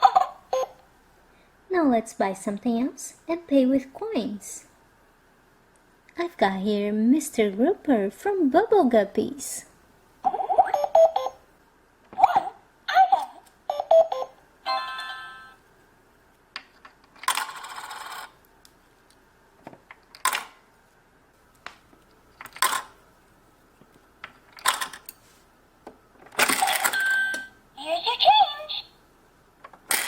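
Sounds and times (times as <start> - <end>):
toy cash register beeping: 17.2 - 18.3, 26.4 - 27.6
toy coins clinking: 17.2 - 18.3.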